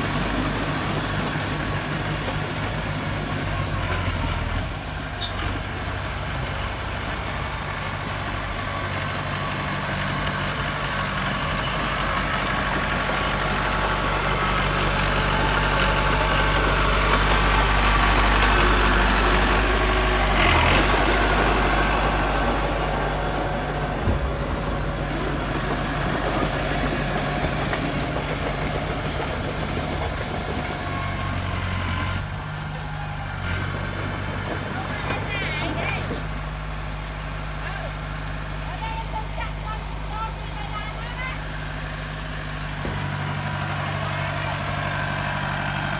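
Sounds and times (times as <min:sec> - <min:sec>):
heavy machinery diesel engine running: 0:00.0 - 0:45.9.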